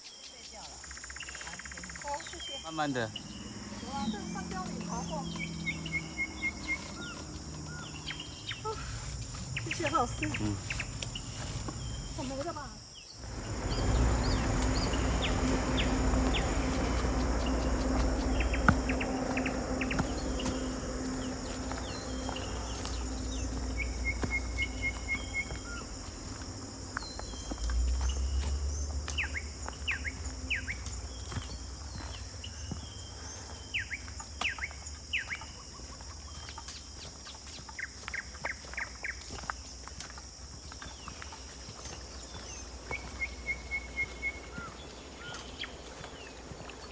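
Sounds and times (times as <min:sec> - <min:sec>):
bird trill: 0:00.0 - 0:26.2
birds chirping: 0:00.0 - 0:46.9
high-pitched insect drone: 0:00.0 - 0:46.9
low rumble: 0:02.2 - 0:36.5.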